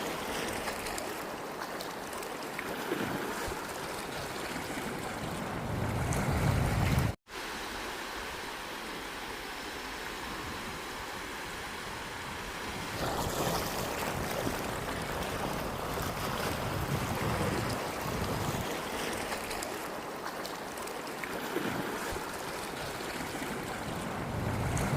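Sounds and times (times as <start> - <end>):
sea waves washing onto beach: 0.0 - 24.9
wind rumbling on microphone: 3.4 - 7.2, 10.2 - 19.6, 21.6 - 24.9.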